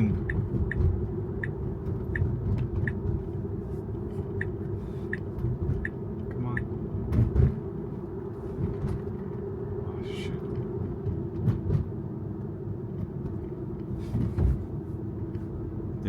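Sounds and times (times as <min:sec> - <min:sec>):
road and tyre rumble: 0:00.0 - 0:16.0
brief bumps: 0:14.0 - 0:14.7.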